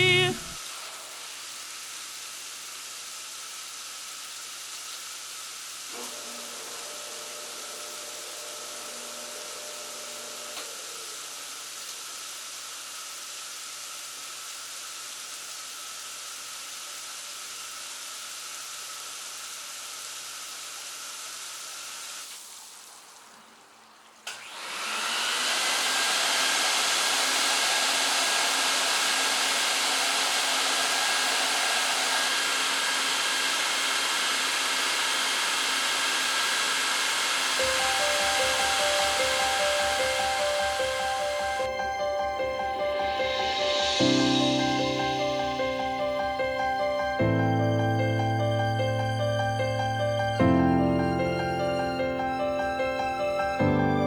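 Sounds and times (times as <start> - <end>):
motor-driven blower whirring: 0.0 - 16.2, 24.3 - 42.4
music: 37.6 - 54.0.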